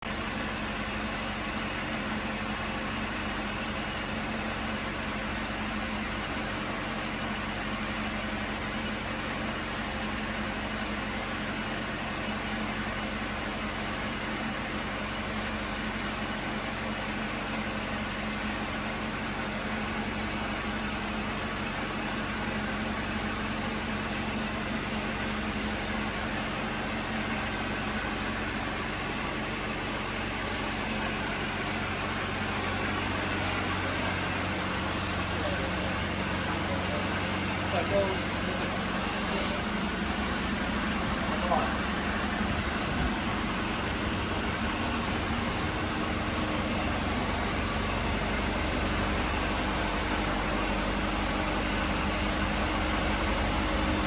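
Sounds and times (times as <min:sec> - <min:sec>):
vehicle engine idling: 0:00.0 - 0:54.0
high-pitched whine: 0:25.8 - 0:54.0.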